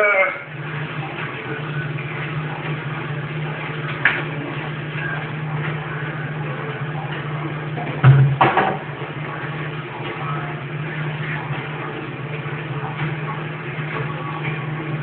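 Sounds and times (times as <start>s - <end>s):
refrigerator hum: 0.0s - 15.0s
items clattering in refrigerator: 3.9s - 12.0s.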